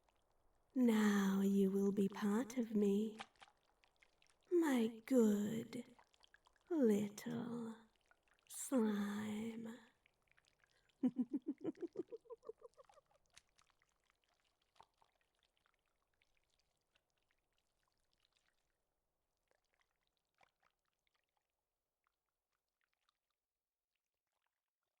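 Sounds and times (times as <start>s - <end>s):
faint wet clicks: 3.1s - 4.5s, 9.9s - 18.8s.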